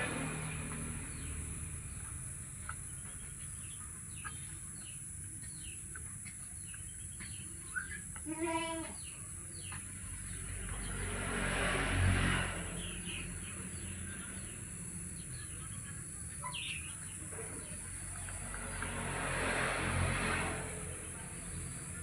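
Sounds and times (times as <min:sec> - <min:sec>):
small birds chirping: 0:00.0 - 0:19.1.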